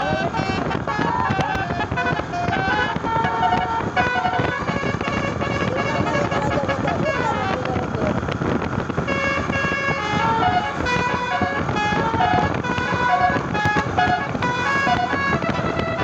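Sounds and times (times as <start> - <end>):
musical air horn melody: 0.0 - 7.7, 9.0 - 16.0
bus and road traffic noise: 0.0 - 16.0.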